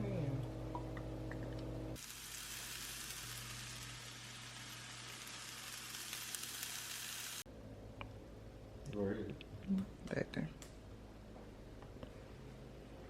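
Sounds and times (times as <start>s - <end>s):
rice sizzling in a hot pan: 2.0s - 7.5s.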